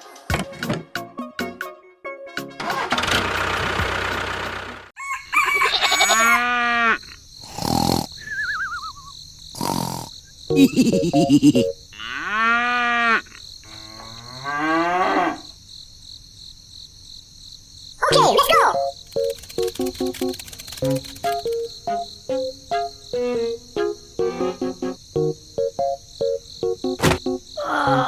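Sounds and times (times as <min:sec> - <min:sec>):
drawn-out animal calls: 0:05.2 - 0:09.1, 0:18.0 - 0:21.6
loud noise hiss: 0:07.4 - 0:08.1
short noisy bursts: 0:19.0 - 0:21.7.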